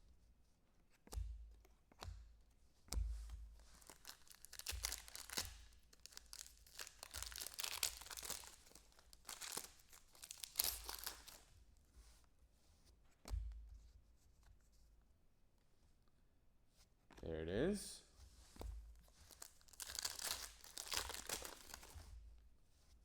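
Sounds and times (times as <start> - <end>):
cards being handled: 3.6 - 11.5, 18.5 - 22.1
foil wrapper tearing and crinkling: 3.8 - 11.4, 19.2 - 22.0.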